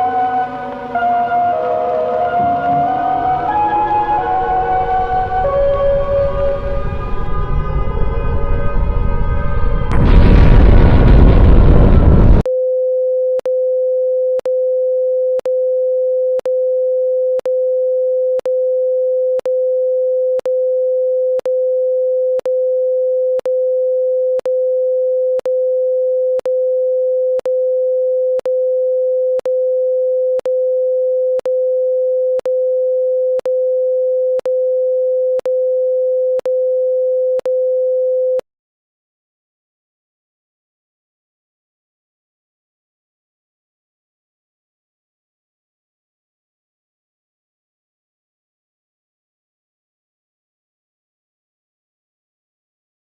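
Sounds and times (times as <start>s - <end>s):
loud boom with music: 0.0s - 12.4s
steady electronic tone: 0.0s - 12.4s.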